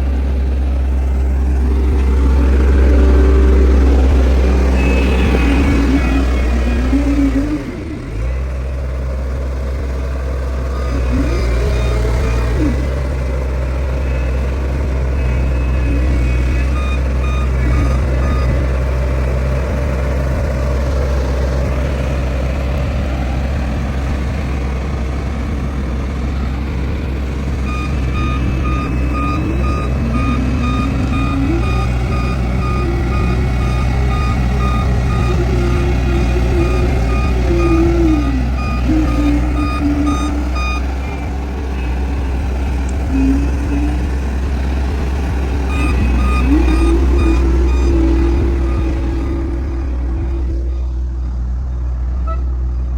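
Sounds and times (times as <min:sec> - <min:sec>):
diesel construction machine: 0:00.0 - 0:52.9
reversing alarm beeping: 0:00.2 - 0:09.3, 0:10.0 - 0:22.7, 0:24.1 - 0:50.9.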